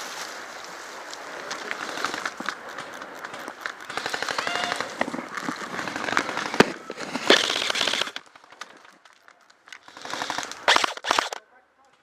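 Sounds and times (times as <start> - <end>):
airsoft guns firing full-auto: 3.8 - 5.0, 5.6 - 8.2, 9.8 - 11.4.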